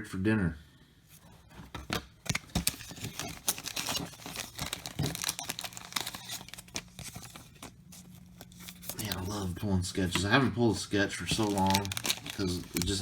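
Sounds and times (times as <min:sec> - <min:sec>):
wrapper tearing: 0:02.3 - 0:09.5, 0:11.2 - 0:13.0
card pack wrapper crinkling: 0:02.3 - 0:09.6, 0:11.1 - 0:13.0.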